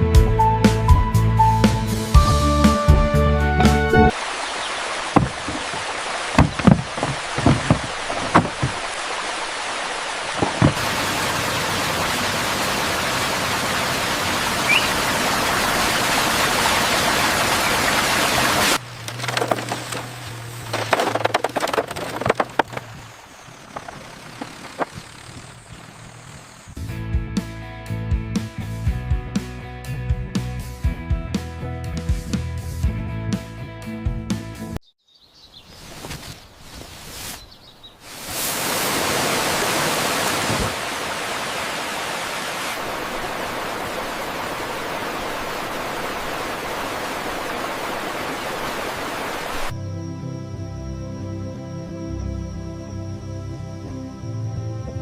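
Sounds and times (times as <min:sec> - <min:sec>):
sharp clicks and knocks: 0:05.2 - 0:09.0, 0:10.4 - 0:10.8.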